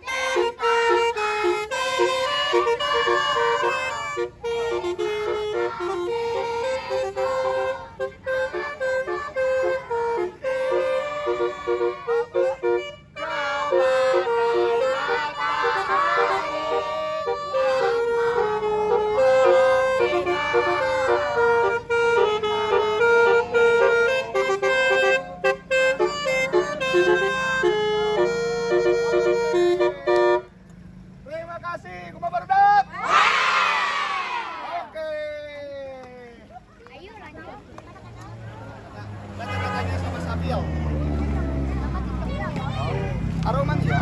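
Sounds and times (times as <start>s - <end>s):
multi-tone horn playing a tune: 0.0s - 30.5s.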